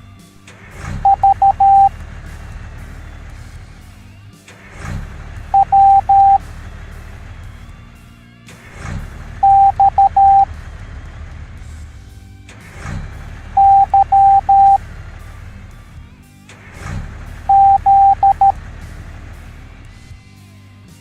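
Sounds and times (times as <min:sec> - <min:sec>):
background music: 0:00.0 - 0:21.0
morse code beeps: 0:01.0 - 0:01.9, 0:05.6 - 0:06.4, 0:09.4 - 0:10.5, 0:13.6 - 0:14.8, 0:17.5 - 0:18.6.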